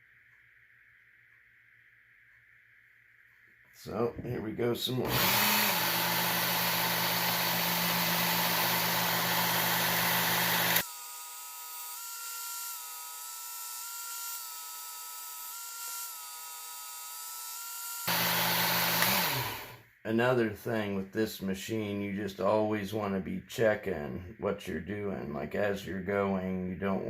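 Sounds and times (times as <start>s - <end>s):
belt sharpener grinding knife: 5.1s - 19.7s.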